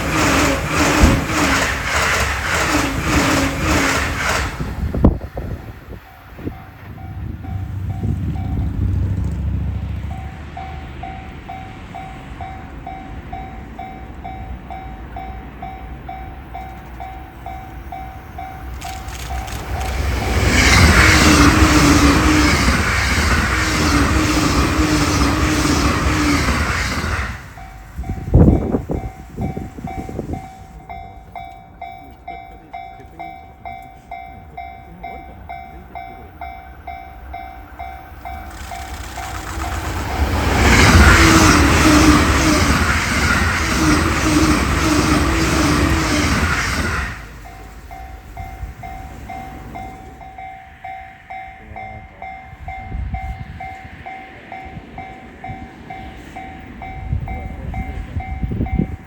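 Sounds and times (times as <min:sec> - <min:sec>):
train wheel clicks: 0:00.0 - 0:11.6, 0:12.2 - 0:36.3, 0:36.9 - 0:50.5
train passing at speed: 0:00.0 - 0:59.0.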